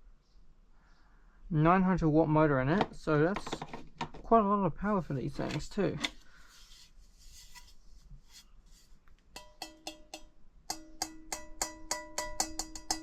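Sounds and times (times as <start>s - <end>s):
metal part ringing when tapped: 9.4s - 13.0s.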